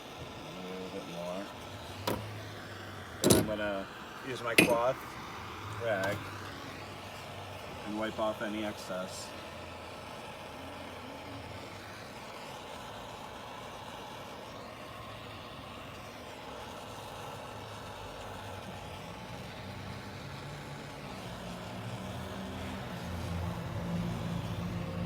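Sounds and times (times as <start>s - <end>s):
low engine hum: 14.9s - 25.0s.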